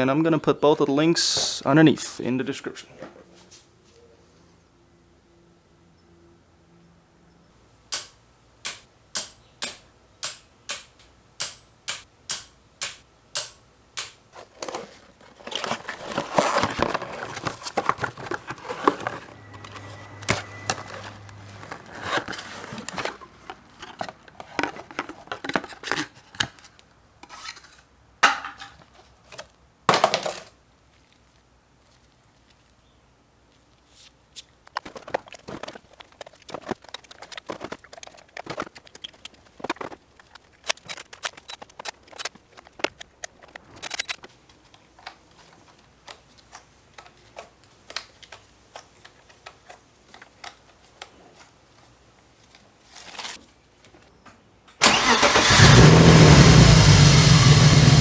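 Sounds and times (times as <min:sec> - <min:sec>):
sharp evenly spaced clicks: 0:07.9 - 0:14.2
metal parts clattering and rubbing: 0:14.3 - 0:26.3, 0:34.9 - 0:44.3.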